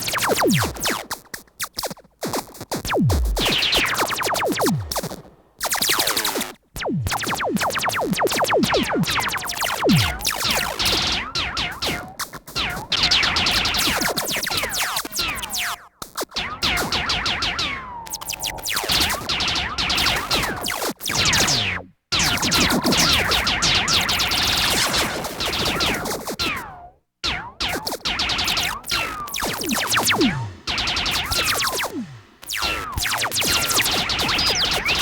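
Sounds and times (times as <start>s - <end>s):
laser blaster shots: 9.5s - 10.7s, 27.2s - 35.0s.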